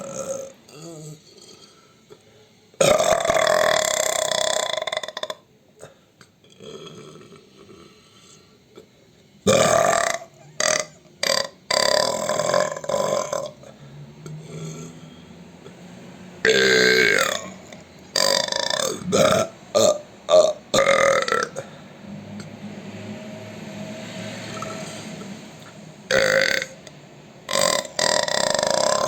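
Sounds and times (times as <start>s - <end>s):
loud human burps: 0.0s - 2.2s, 2.8s - 8.9s, 9.5s - 13.7s, 16.4s - 21.8s, 26.1s - 26.8s, 27.5s - 29.0s.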